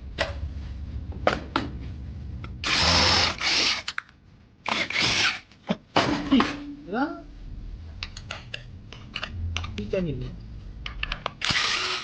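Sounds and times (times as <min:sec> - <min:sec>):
power tool undoing bolts: 0:11.4 - 0:12.0.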